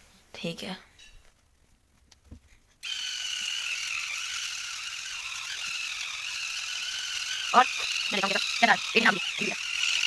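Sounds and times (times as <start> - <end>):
electric toothbrush running: 2.8 - 10.0.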